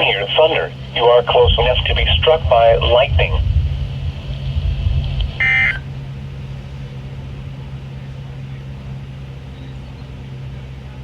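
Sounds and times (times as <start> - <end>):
steady low hum: 0.0 - 11.0
digital data tone burst: 5.4 - 5.8.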